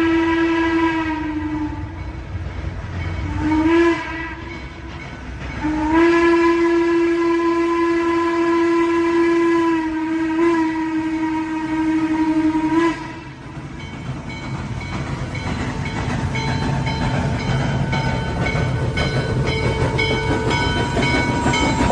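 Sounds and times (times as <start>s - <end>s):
train horn blasts: 0.0s - 2.0s, 3.2s - 4.5s, 5.6s - 13.4s
train rumble: 0.0s - 21.9s.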